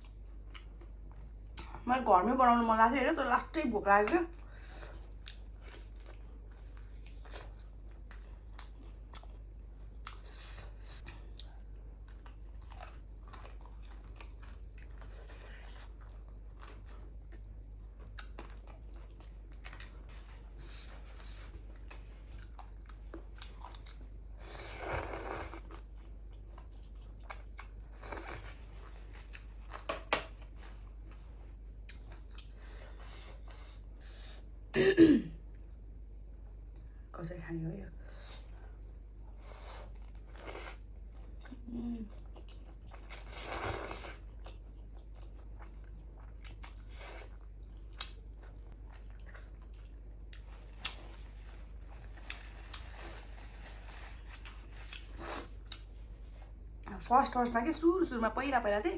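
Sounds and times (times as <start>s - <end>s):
chewing and crunching food: 0.0s - 1.8s, 4.3s - 34.5s, 38.4s - 57.6s
steady low hum: 0.0s - 58.9s.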